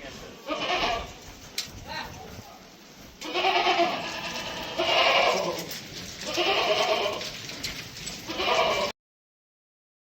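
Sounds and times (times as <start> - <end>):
goat bleating: 0.1 - 1.2, 3.2 - 7.4, 8.1 - 8.9.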